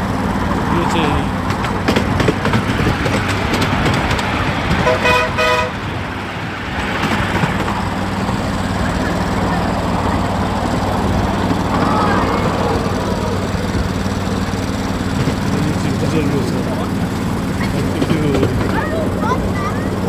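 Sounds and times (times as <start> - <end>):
miniature train engine humming: 0.0 - 20.0
train clatter: 0.0 - 20.0
two-tone horn toot: 4.8 - 5.8.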